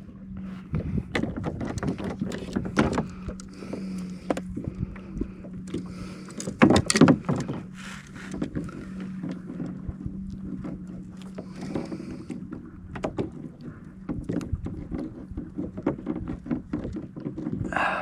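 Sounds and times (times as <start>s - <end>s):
low hum: 0.0s - 18.0s
knocks and clatter on kayak: 0.3s - 18.0s.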